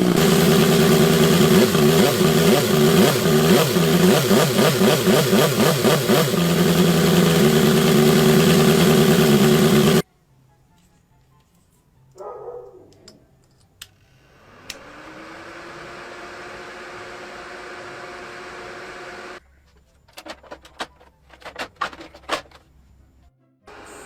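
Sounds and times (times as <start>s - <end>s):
small motor whining: 0.0s - 10.0s, 14.2s - 19.4s.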